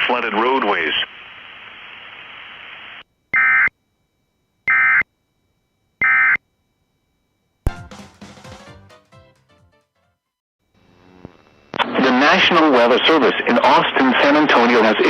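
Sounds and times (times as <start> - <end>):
radio hiss: 0.0 - 3.0, 10.8 - 15.0
musical sound: 7.7 - 10.2.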